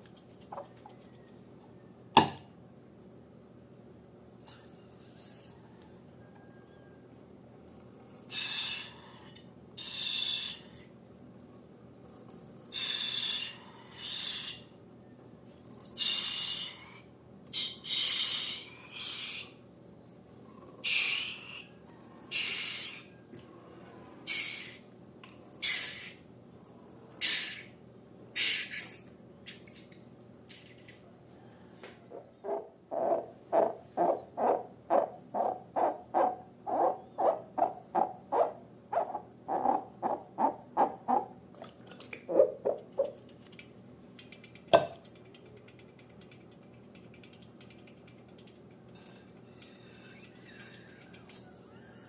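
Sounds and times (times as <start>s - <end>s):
short hissing bursts: 9.8s - 10.8s, 12.7s - 14.6s, 16.0s - 16.8s, 22.3s - 23.1s, 24.3s - 24.9s, 25.6s - 26.2s, 27.2s - 27.7s, 28.4s - 29.0s.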